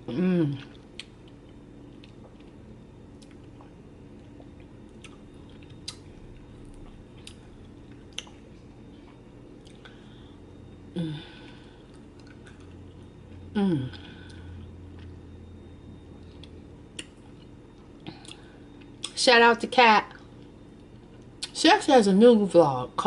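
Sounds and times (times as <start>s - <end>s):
person humming: 0.0s - 0.7s, 11.0s - 11.5s, 13.5s - 14.3s
soft chewing: 0.5s - 10.7s, 11.4s - 19.2s, 20.2s - 21.5s
lip smacks and mouth clicks: 1.0s - 1.4s, 3.2s - 6.1s, 8.0s - 8.4s, 16.2s - 17.2s.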